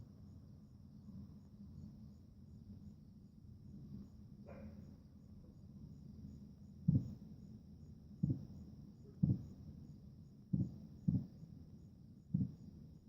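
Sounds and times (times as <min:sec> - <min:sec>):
distant fireworks booming: 0:06.9 - 0:07.2, 0:09.2 - 0:09.6, 0:10.5 - 0:11.4, 0:12.3 - 0:12.6.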